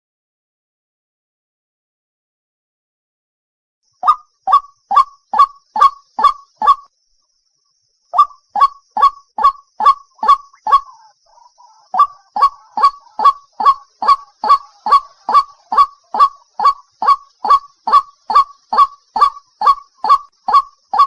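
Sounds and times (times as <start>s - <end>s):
waterhen calling: 4.0s - 6.9s, 8.2s - 21.0s.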